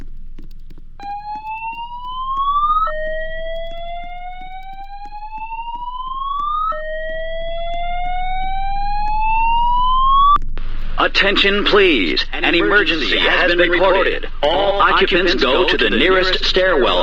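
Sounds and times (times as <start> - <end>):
faint regular ticking: 0.0 - 17.0
rising whoop alarm tone: 1.0 - 10.4.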